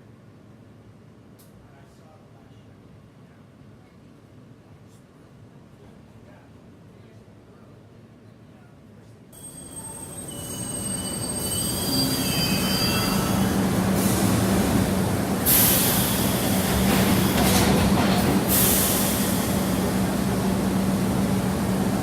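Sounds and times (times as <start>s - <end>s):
subway train rumbling: 0.0s - 22.0s
wheels squealing on rails: 9.4s - 20.2s.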